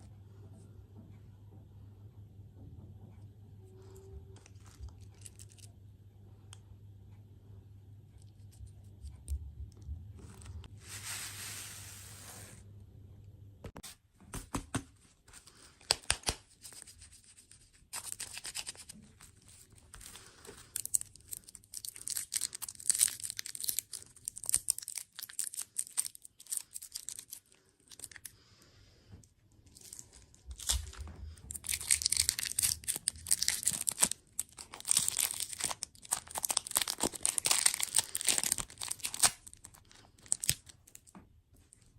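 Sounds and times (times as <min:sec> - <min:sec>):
plastic packaging tearing and crinkling: 0:04.5 - 0:05.7, 0:18.0 - 0:28.3, 0:29.7 - 0:41.1.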